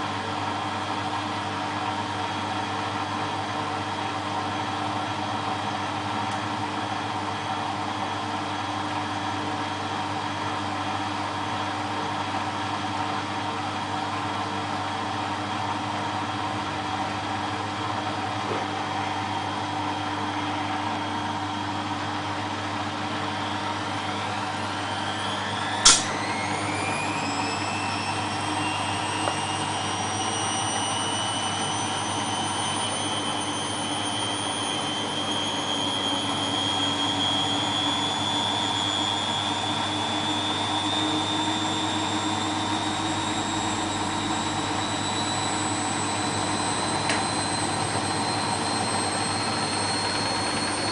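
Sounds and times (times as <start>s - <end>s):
washing machine spinning: 0.0s - 50.9s
drum whine rising in pitch: 23.3s - 50.9s
sharp click: 25.8s - 26.2s.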